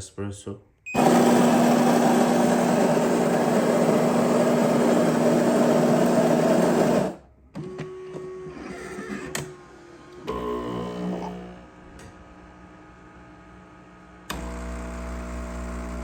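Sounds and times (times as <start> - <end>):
coffee grinder grinding beans: 1.0 - 7.2.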